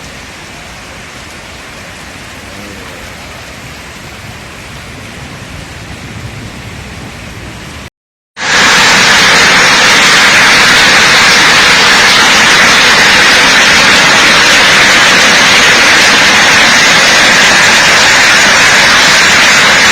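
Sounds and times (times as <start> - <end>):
hail and rain pelting down: 8.4 - 19.9.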